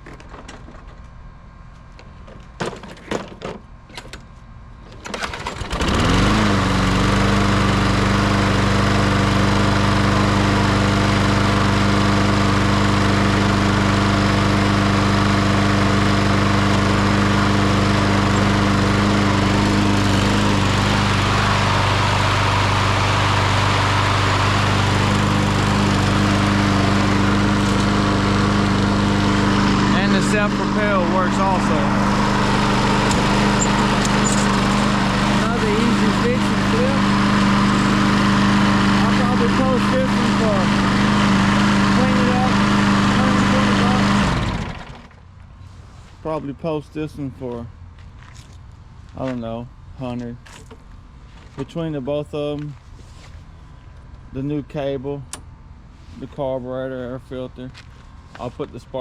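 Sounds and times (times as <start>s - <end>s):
lawn mower engine running: 4.8s - 45.6s
recoil starter rattling: 4.9s - 7.3s, 12.9s - 45.2s.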